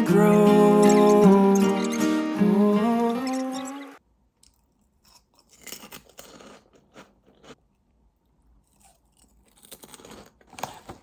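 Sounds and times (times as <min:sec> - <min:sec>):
chewing crunchy food: 0:04.4 - 0:07.6, 0:08.5 - 0:11.0.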